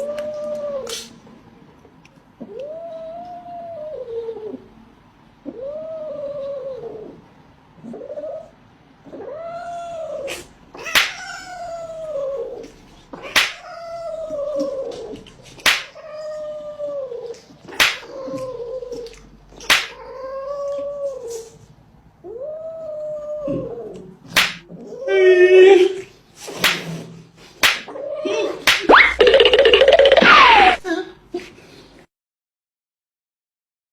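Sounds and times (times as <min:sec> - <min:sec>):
pet animal howling: 0:05.4 - 0:07.2, 0:07.8 - 0:19.2, 0:22.2 - 0:26.1, 0:30.2 - 0:30.8.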